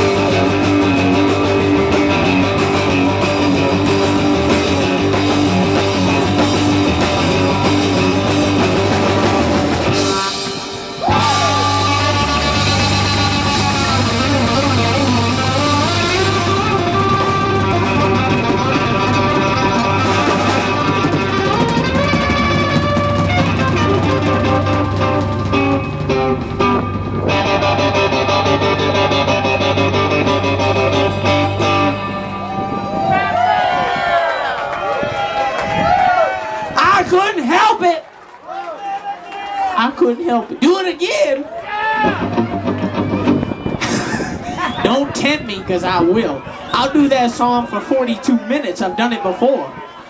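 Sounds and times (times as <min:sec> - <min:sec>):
bending guitar notes: 0:00.0 - 0:33.9, 0:42.0 - 0:47.0
rock band playing: 0:00.0 - 0:37.2, 0:41.9 - 0:48.0.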